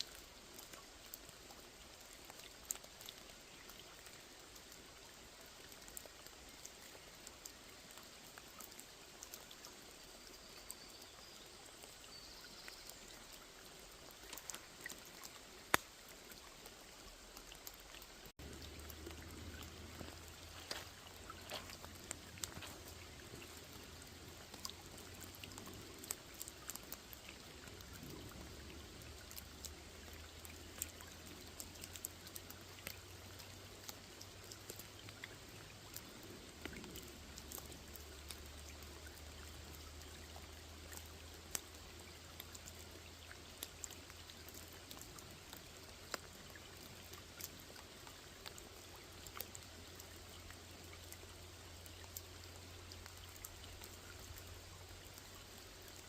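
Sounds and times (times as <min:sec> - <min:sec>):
rain falling on a pond: 0:00.0 - 0:56.0
low steady hum: 0:17.9 - 0:31.8.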